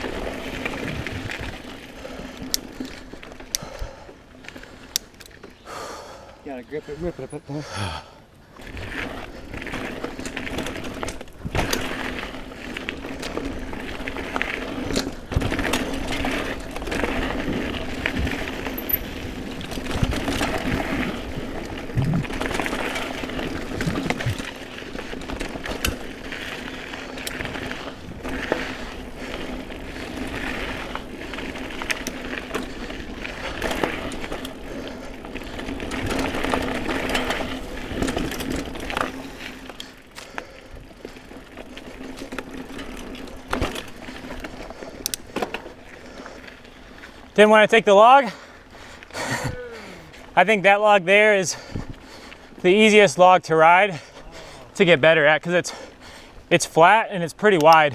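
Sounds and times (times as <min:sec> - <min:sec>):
bike knocking and rattling: 0:00.0 - 0:06.1, 0:08.5 - 0:47.5
bicycle rear hub buzzing: 0:08.7 - 0:47.1.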